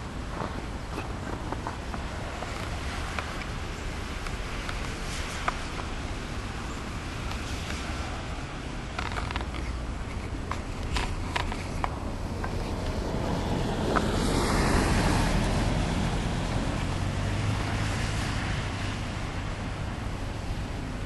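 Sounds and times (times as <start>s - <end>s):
vehicle passing: 11.8s - 21.0s.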